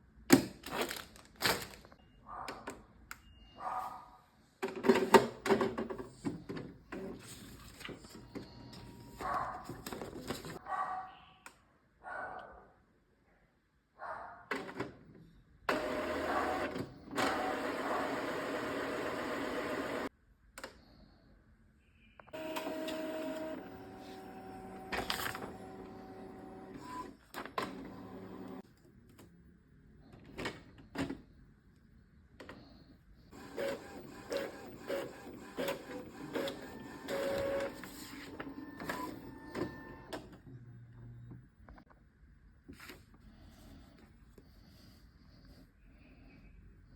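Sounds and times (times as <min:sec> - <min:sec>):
printer motor whine: 0:15.7 - 0:20.1, 0:22.4 - 0:28.6, 0:33.3 - 0:40.2
printer rhythmic pulsing: 0:15.7 - 0:20.1, 0:22.4 - 0:28.6, 0:33.3 - 0:40.2
printer rushing noise: 0:15.7 - 0:20.1, 0:22.4 - 0:28.6, 0:33.3 - 0:40.2.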